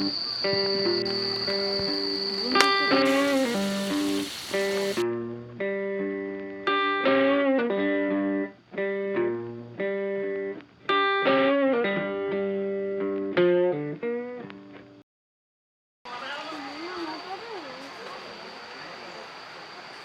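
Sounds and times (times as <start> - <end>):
guitar plucked melody: 0.6 - 15.0.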